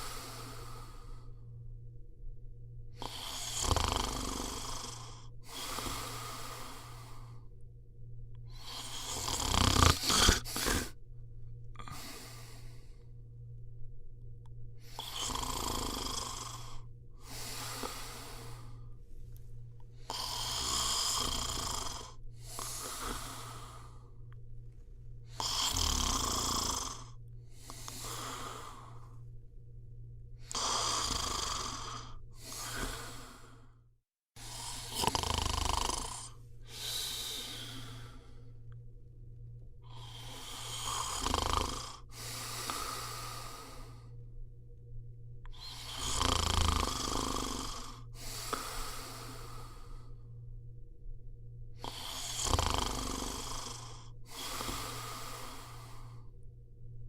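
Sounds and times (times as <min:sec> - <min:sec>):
person snoring: 0:00.0 - 0:01.5, 0:03.0 - 0:07.5, 0:08.4 - 0:11.0, 0:11.7 - 0:13.1, 0:14.8 - 0:19.0, 0:20.0 - 0:24.4, 0:25.2 - 0:29.3, 0:30.4 - 0:33.8, 0:34.4 - 0:38.8, 0:39.8 - 0:44.2, 0:45.5 - 0:50.3, 0:51.8 - 0:56.3.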